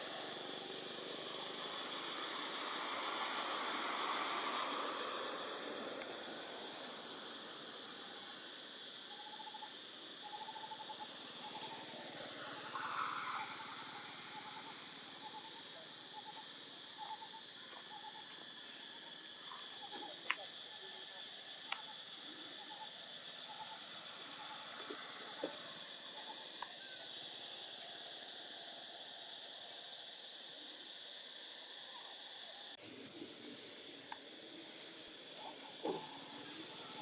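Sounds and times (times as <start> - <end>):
high insect buzz: 0.0 - 37.0.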